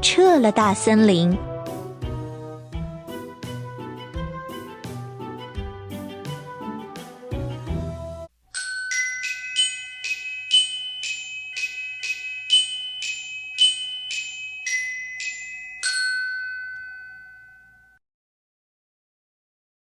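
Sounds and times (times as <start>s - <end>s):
glockenspiel melody: 8.5s - 18.0s.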